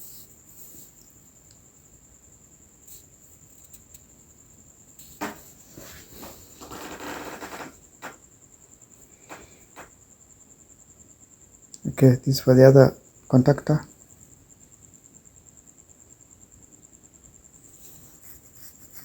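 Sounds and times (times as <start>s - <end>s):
wires clicking and rattling: 5.0s - 8.2s.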